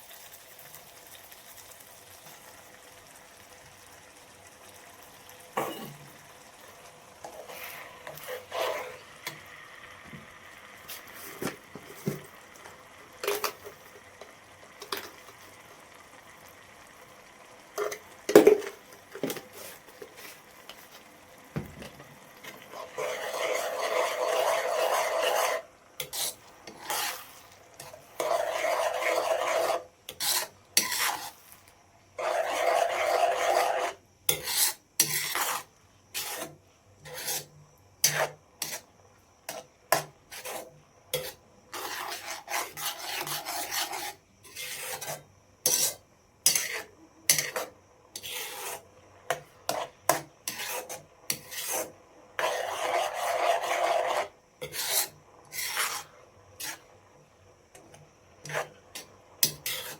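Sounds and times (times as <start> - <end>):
rasping scraping strokes: 7.2 - 9.4, 22.5 - 31.4, 32.2 - 38.8, 40.3 - 48.8, 49.7 - 56.8, 58.4 - 59.9.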